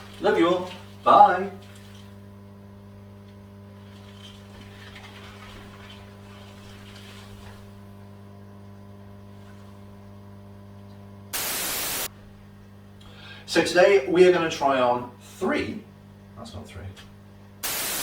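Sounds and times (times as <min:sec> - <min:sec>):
electrical mains hum: 0:00.0 - 0:18.0
loud white-noise static burst: 0:11.3 - 0:12.2, 0:17.6 - 0:18.0
faint static hiss: 0:11.4 - 0:12.1.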